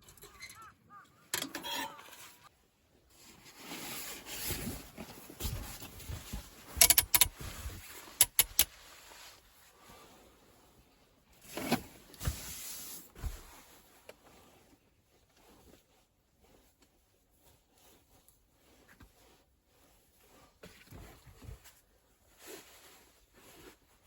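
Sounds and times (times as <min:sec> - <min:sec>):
sharp clicks: 0:06.8 - 0:07.3, 0:08.2 - 0:08.7.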